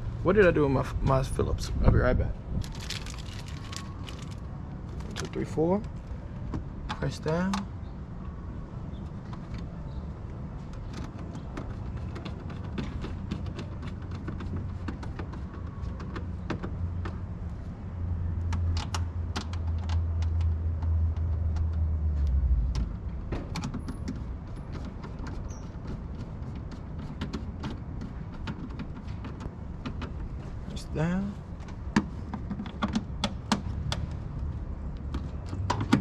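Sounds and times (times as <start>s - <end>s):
low rumble: 22.0s - 23.3s.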